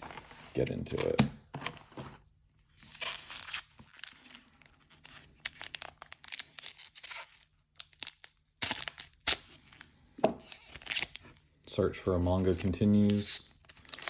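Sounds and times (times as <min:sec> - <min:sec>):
wrappers ripping and crinkling: 0:12.7 - 0:14.0.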